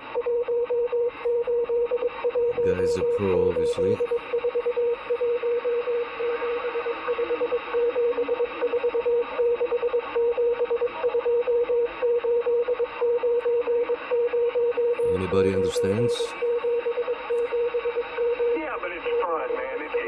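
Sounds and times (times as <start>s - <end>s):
morse code tone: 0.0s - 20.0s
radio hiss: 2.4s - 4.3s, 5.3s - 11.1s, 14.8s - 20.0s.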